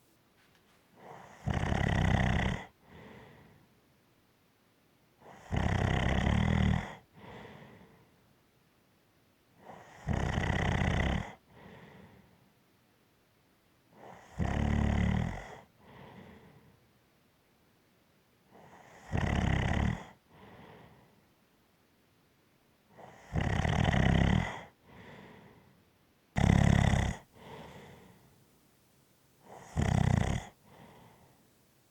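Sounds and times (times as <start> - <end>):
loud rasping snores: 1.0 - 2.8, 5.3 - 7.0, 9.7 - 11.4, 14.0 - 15.7, 18.6 - 20.2, 23.0 - 24.8, 26.4 - 28.1, 29.4 - 31.2
faint short breath: 2.8 - 3.7, 24.8 - 25.8, 27.3 - 28.4, 30.6 - 31.8.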